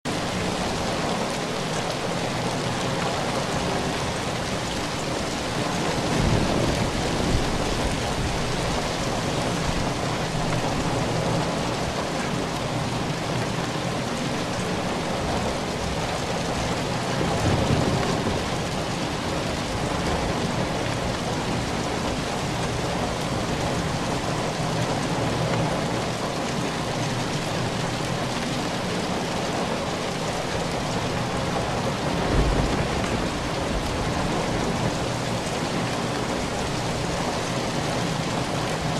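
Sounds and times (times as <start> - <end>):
heavy rain falling: 0.0 - 38.9
low thunder rumbles: 3.6 - 11.4, 15.4 - 23.8, 30.6 - 35.2.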